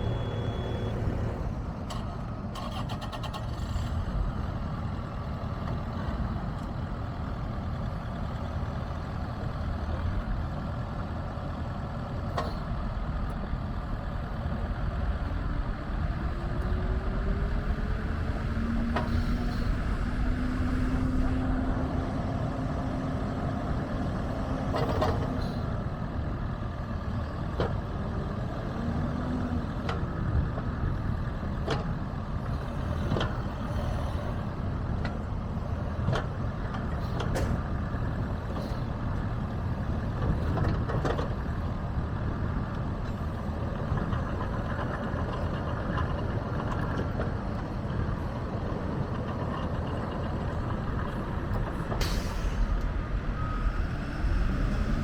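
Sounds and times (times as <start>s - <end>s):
excavator diesel engine running: 0.0s - 55.0s
brief hiss: 52.0s - 52.8s.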